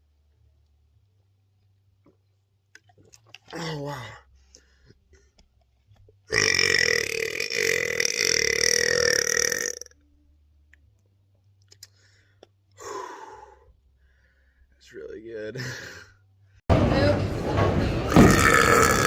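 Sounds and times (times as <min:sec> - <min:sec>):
man burping loudly: 0:06.3 - 0:09.9, 0:18.1 - 0:19.0.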